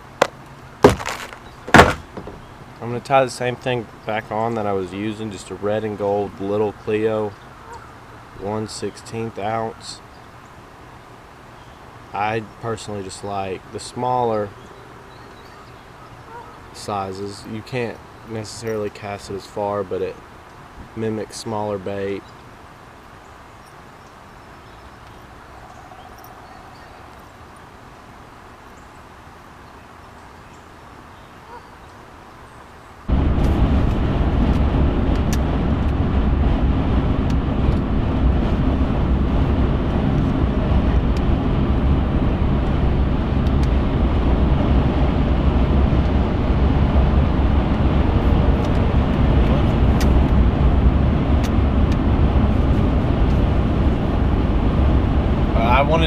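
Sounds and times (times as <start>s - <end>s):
road and engine rumble inside car: 33.1s - 56.0s.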